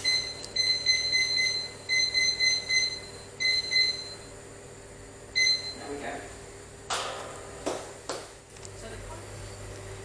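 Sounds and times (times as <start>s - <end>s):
kitchen timer alarm beeping: 0.0s - 4.4s, 5.3s - 5.9s.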